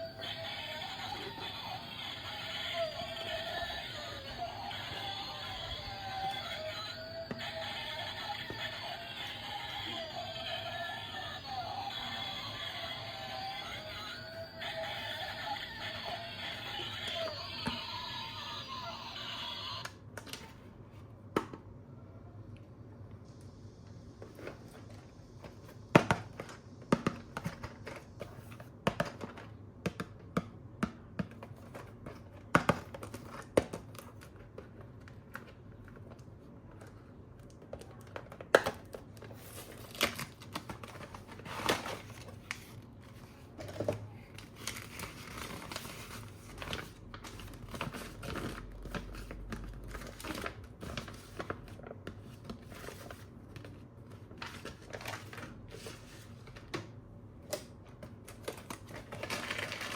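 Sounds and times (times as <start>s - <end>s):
plastic and paper crinkling: 37.8s - 56.8s, 58.1s - 59.9s.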